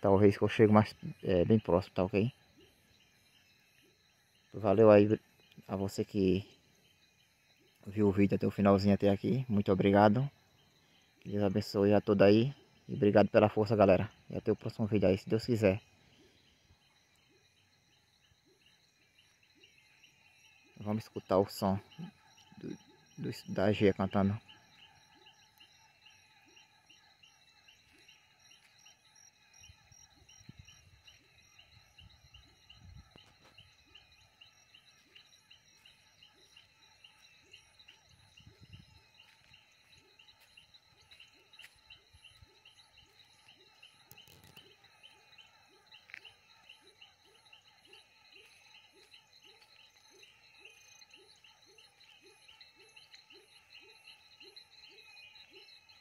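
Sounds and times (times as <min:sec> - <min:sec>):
insect trill: 0:00.0 - 0:56.0
high chirping frog calls: 0:00.2 - 0:56.0
low frog call: 0:20.7 - 0:39.3.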